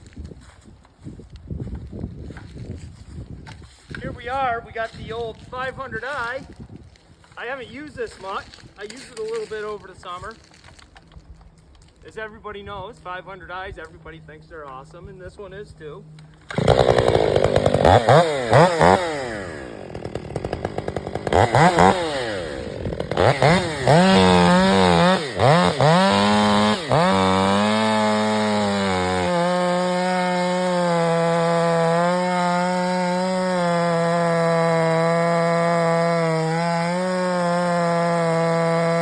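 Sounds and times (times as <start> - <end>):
chainsaw revving: 16.4 - 39.0.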